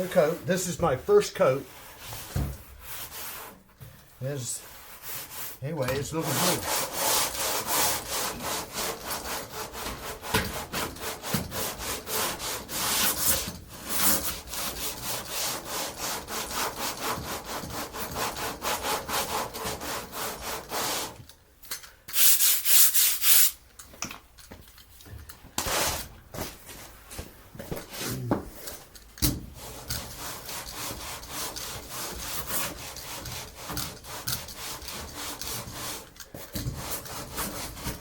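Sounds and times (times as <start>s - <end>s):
sandpaper rubbing: 1.6s - 3.6s, 4.3s - 21.2s, 22.1s - 23.6s, 29.6s - 38.0s.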